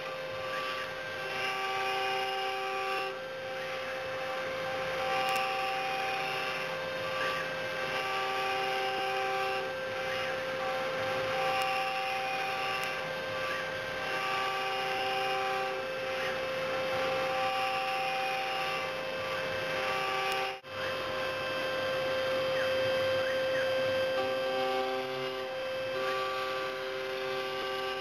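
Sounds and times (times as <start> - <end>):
milling cutting noise: 0.0 - 28.0
motor tones switching: 0.0 - 28.0
spindle whine: 0.0 - 28.0.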